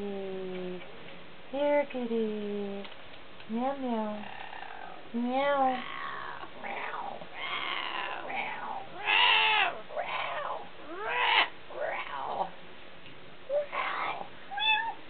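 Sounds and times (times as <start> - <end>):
kitten meowing: 13.5 - 15.0.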